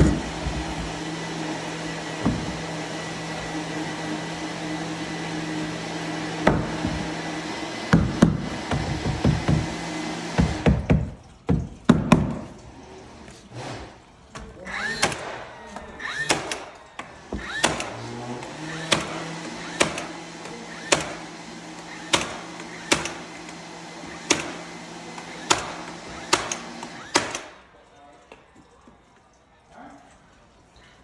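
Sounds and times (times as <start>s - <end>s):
sharp knocks on wood: 2.2s - 2.7s, 8.0s - 9.7s.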